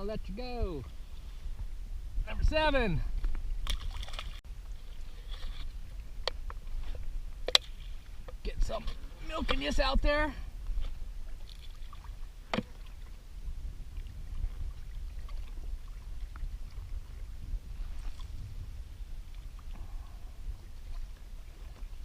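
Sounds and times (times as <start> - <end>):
water sloshing against kayak hull: 2.5 - 22.0
steady low rumble: 12.1 - 22.0.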